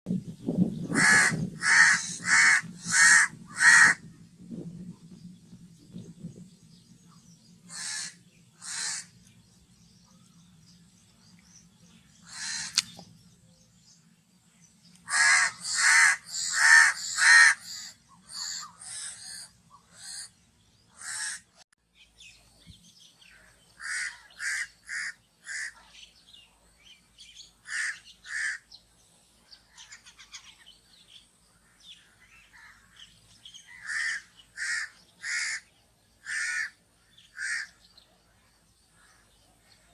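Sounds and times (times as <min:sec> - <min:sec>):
crow cawing: 0:00.9 - 0:04.0, 0:07.7 - 0:09.1, 0:12.2 - 0:12.8, 0:15.1 - 0:20.3, 0:20.9 - 0:21.5, 0:23.8 - 0:25.8, 0:27.6 - 0:28.6, 0:33.7 - 0:37.8.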